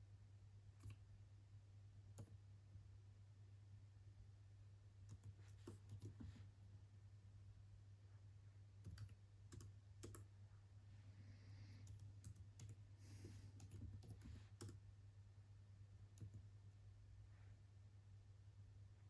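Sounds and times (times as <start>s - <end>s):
computer mouse clicks: 0.8s - 1.0s, 2.2s - 2.4s, 5.1s - 6.2s, 8.8s - 10.3s, 11.8s - 14.8s
keyboard keys clicking: 5.1s - 6.2s, 8.8s - 10.3s, 13.6s - 14.8s.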